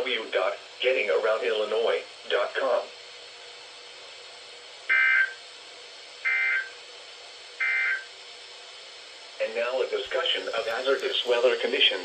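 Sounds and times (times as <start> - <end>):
digital data tone bursts: 4.9 - 5.4, 6.2 - 6.7, 7.6 - 8.1.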